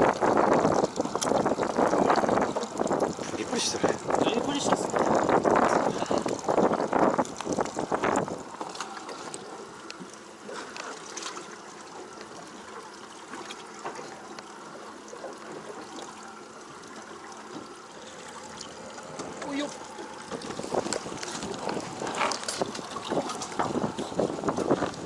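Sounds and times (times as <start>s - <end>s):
water trickling and splashing: 0.0s - 25.0s.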